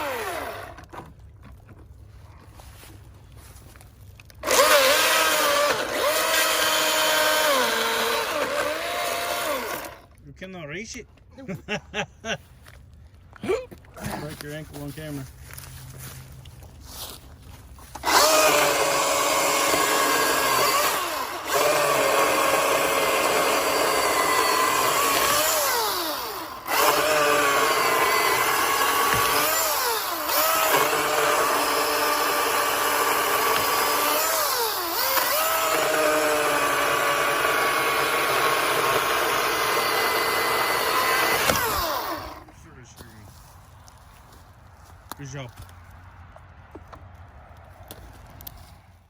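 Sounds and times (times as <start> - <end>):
battery chainsaw cutting log: 0.0 - 1.1, 4.3 - 10.2, 17.9 - 42.7.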